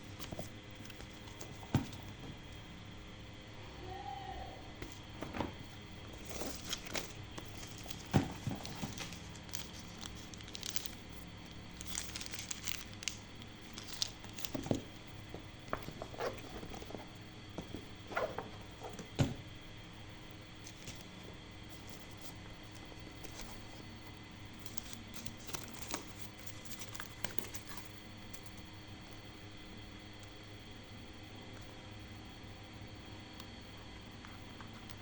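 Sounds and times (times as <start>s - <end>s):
plastic packaging crinkling: 4.9s - 19.4s, 20.6s - 28.6s.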